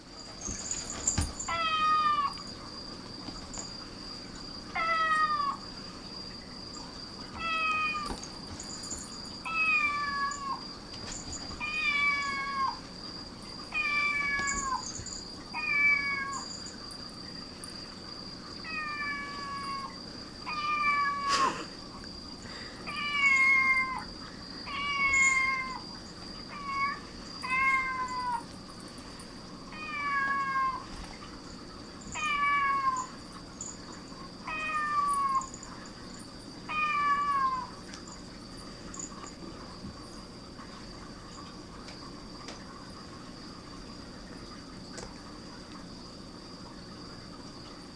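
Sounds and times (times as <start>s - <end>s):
faint high-pitched whine: 0.0s - 47.9s
cat meowing: 7.4s - 8.1s, 22.9s - 24.1s, 24.7s - 25.8s, 26.5s - 28.4s, 29.7s - 30.8s, 34.5s - 35.5s, 36.7s - 37.7s.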